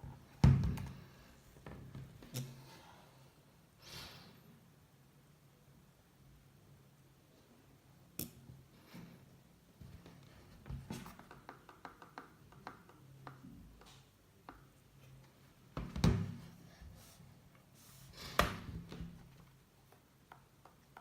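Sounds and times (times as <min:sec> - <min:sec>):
laptop knocking and clicking: 0:10.6 - 0:13.9.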